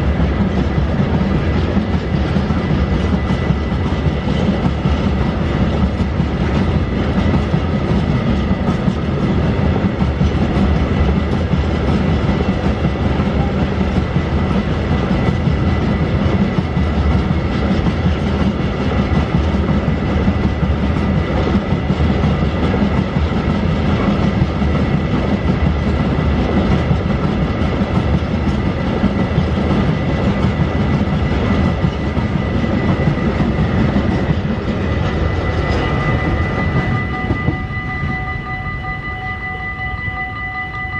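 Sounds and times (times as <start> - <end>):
freight train wheels clacking: 0.0 - 40.9
thin steady high tone: 35.2 - 40.9.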